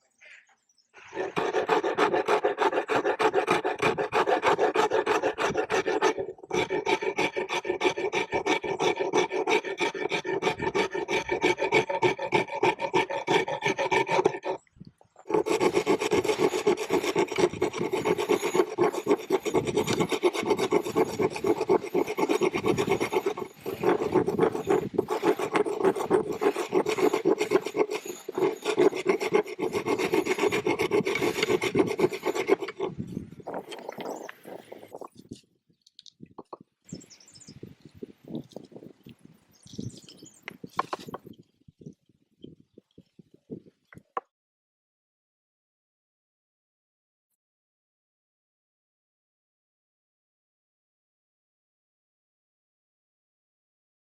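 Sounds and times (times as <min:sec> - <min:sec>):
rasp scraping wood: 0:01.1 - 0:14.6, 0:15.3 - 0:35.2, 0:40.6 - 0:41.3.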